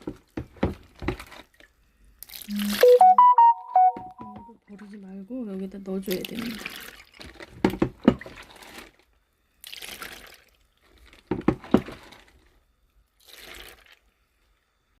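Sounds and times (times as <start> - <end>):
brine pouring and splashing: 2.2 - 2.8, 6.0 - 9.0, 9.6 - 12.6, 13.2 - 14.2.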